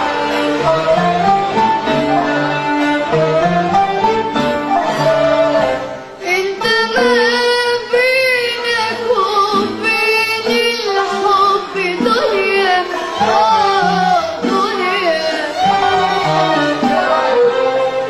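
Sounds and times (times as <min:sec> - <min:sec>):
live band playing: 0:00.0 - 0:18.0
girl singing: 0:06.2 - 0:16.1.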